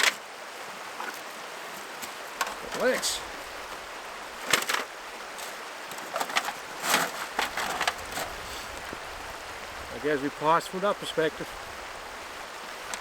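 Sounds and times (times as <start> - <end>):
river water rushing: 0.0 - 13.0.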